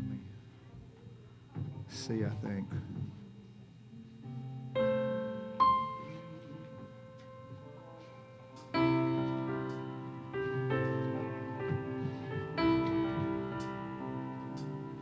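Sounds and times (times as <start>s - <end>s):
keyboard playing sustained chords: 4.4s - 15.0s.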